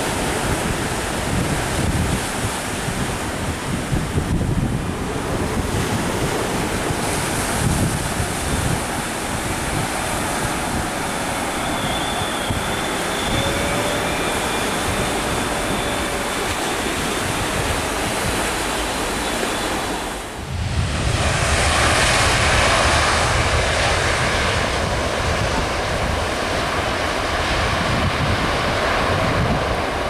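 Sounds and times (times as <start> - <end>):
jet engines roaring: 0.0 - 30.0
low rumble: 20.4 - 26.3.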